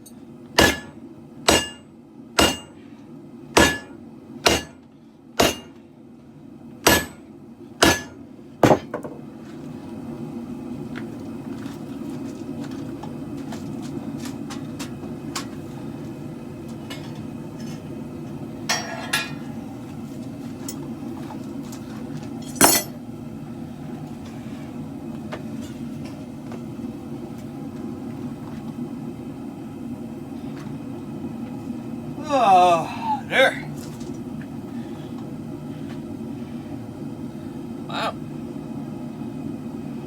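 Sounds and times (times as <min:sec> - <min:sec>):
loud metal strike: 0:03.6 - 0:04.8
ringing metal clank: 0:18.7 - 0:19.4, 0:22.5 - 0:23.0.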